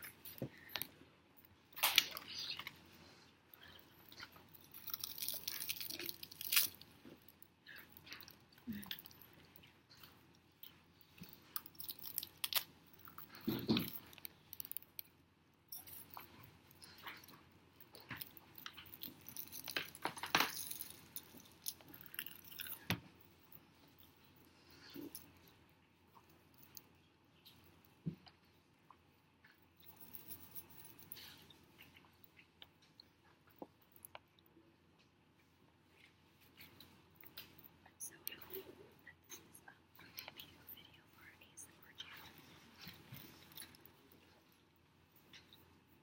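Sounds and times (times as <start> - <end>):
seaweed being chewed: 3.6 - 15.0.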